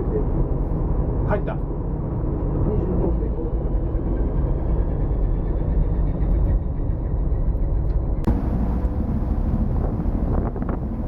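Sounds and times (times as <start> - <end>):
diesel engine deep rumble: 0.0 - 11.0
hissing wind noise: 8.3 - 11.0.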